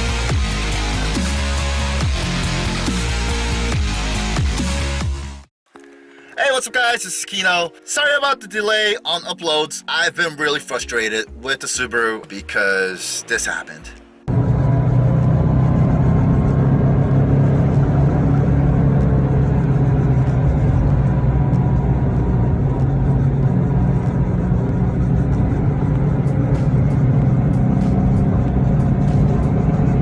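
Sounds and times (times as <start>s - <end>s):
car engine and drivetrain noise: 14.3s - 30.0s.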